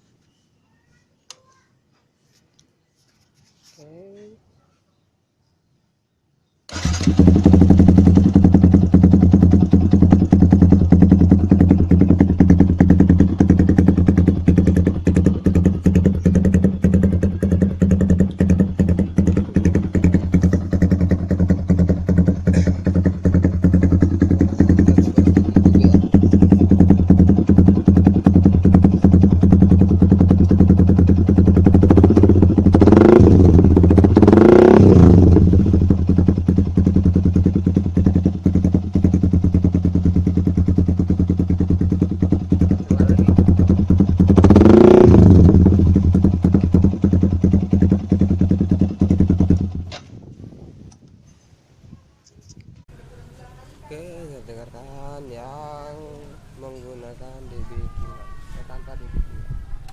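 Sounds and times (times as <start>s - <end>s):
motorcycle engine idling: 6.7s - 50.2s, 52.9s - 57.6s
motorcycle engine revving: 6.7s - 50.6s.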